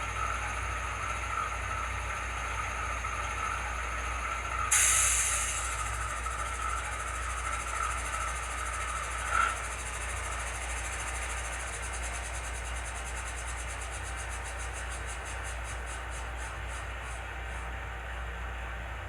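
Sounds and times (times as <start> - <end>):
model train diesel idle sound: 0.0 - 19.0.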